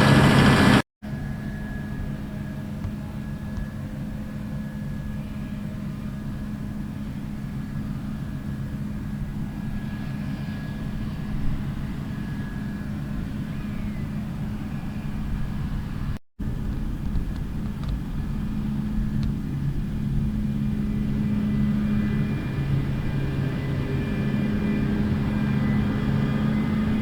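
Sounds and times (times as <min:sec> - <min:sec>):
diesel engine droning: 0:00.0 - 0:00.8, 0:17.6 - 0:27.0.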